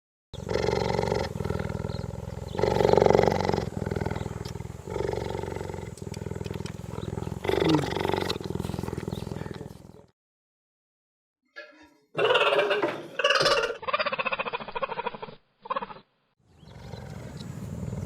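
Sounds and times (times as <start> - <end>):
cheetah pulsing rumble: 0.4 - 10.1, 16.5 - 18.0.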